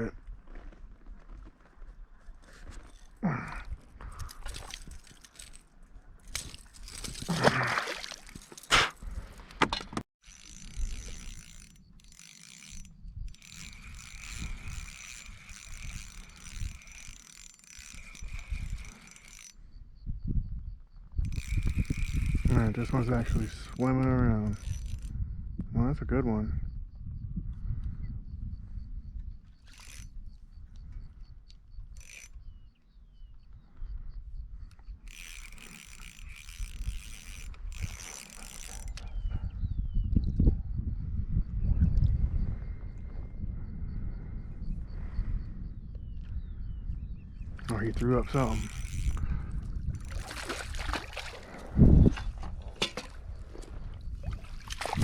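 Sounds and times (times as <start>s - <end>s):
fishing reel whirring: 2.9s - 5.6s, 10.2s - 19.8s, 21.2s - 25.2s, 29.5s - 33.3s, 34.7s - 40.0s, 47.4s - 52.5s.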